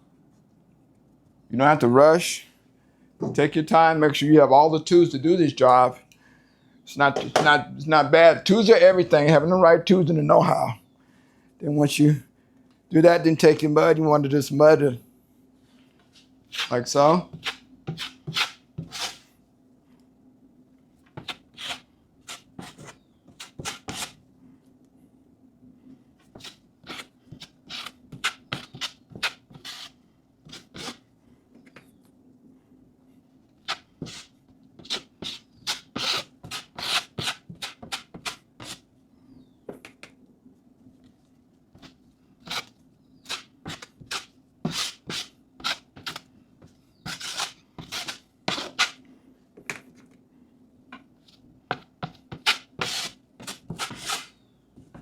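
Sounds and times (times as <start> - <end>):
faint steady hum: 0.0 - 55.0
putty knife scraping compound: 16.1 - 19.3, 21.1 - 24.2, 26.2 - 31.7, 33.6 - 38.9, 41.7 - 49.0, 51.3 - 55.0.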